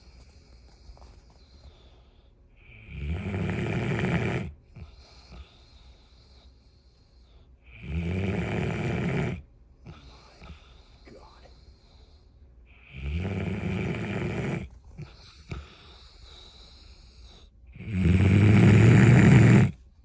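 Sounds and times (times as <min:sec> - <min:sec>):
dog snoring: 0:02.6 - 0:06.5, 0:07.6 - 0:11.0, 0:12.7 - 0:19.8.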